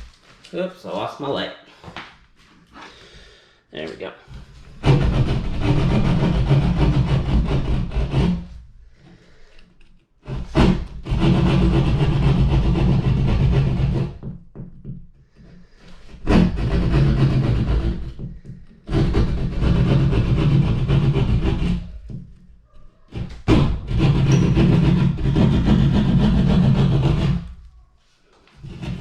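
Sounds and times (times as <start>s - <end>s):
power tool cutting drywall: 4.7s - 8.5s, 10.2s - 14.4s, 15.8s - 22.2s, 23.1s - 27.6s.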